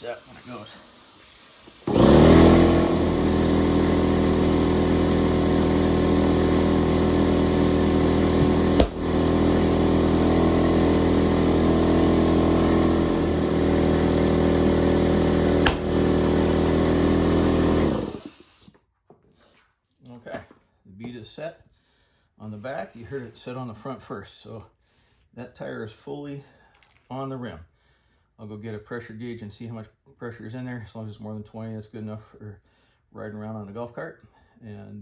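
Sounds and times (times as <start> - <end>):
electric tire inflator running: 0.0 - 18.7
tire beads popping onto rim: 7.9 - 9.6, 15.4 - 16.7.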